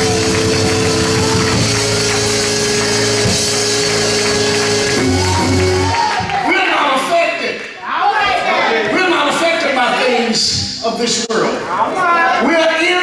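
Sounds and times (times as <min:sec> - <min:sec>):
sustained chords: 0:00.0 - 0:06.0
drum kit: 0:00.0 - 0:06.4.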